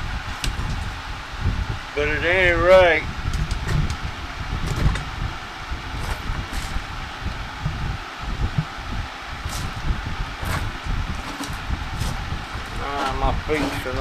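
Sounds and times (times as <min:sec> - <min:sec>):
wind rumbling on microphone: 0:00.0 - 0:14.0
faint scrapes or rustles: 0:10.4 - 0:14.0.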